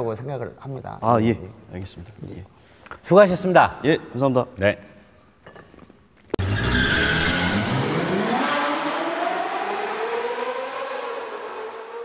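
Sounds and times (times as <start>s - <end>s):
car engine accelerating hard: 6.4s - 12.0s.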